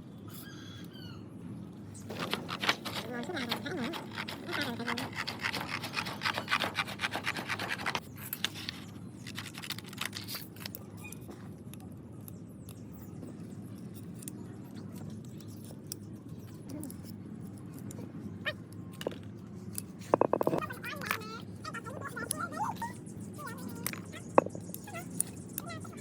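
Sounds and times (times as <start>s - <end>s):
light scratches and clicks: 2.0s - 26.0s
hand scrubbing strokes: 2.2s - 8.0s.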